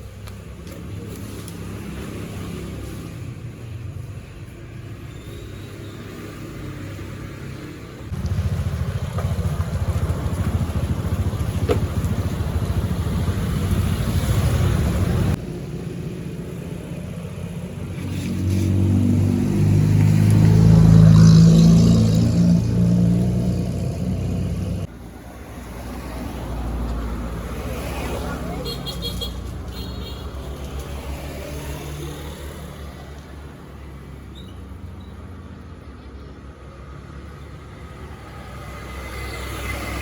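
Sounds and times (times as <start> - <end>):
vehicle engine running: 8.1 - 15.4.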